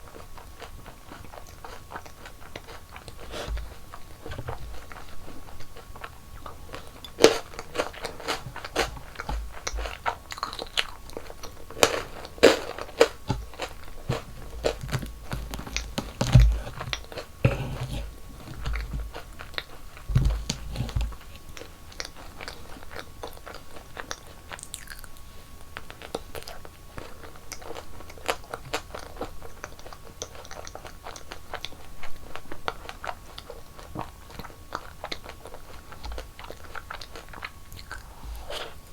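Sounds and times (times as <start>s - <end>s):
crunching sweets: 0.0s - 38.9s.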